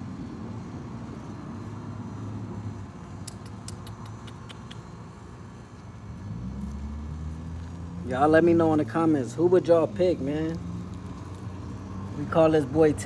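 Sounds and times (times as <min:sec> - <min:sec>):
light sharp clicks: 0:03.2 - 0:05.0.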